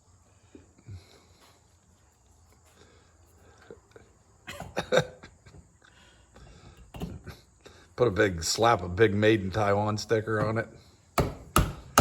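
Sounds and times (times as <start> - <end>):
man laughing: 3.9 - 5.7.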